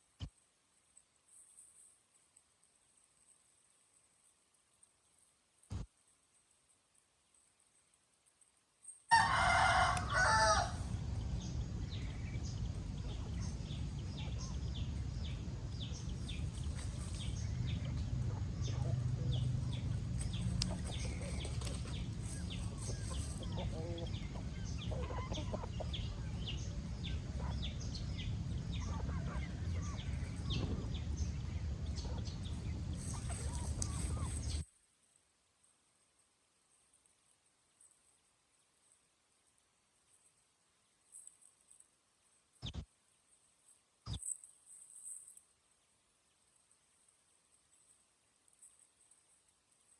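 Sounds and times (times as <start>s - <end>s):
rooster crowing: 9.1s - 10.9s
chickens peeping and chirping: 9.4s - 34.7s
low steady rumble: 9.7s - 34.6s.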